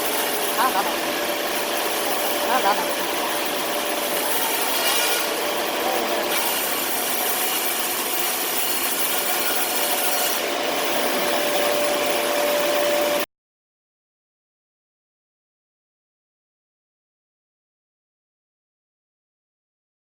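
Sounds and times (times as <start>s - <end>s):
saw blade cutting wood: 0.0s - 13.3s.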